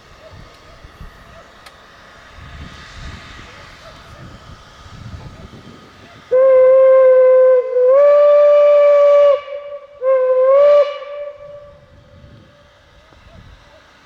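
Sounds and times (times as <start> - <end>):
steam locomotive whistle: 6.1 - 13.2.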